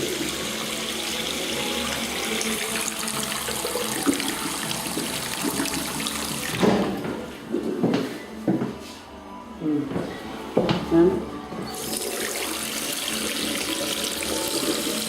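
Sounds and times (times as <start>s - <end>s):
toilet flushing: 0.0s - 7.3s, 11.7s - 15.0s.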